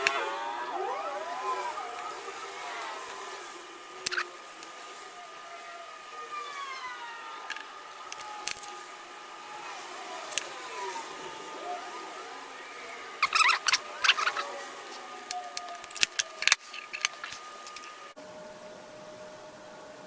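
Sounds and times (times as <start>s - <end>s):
faint tone with sliding pitch: 0.0s - 8.0s
small metal parts clicking: 4.0s - 4.8s, 7.5s - 8.9s, 13.2s - 18.1s.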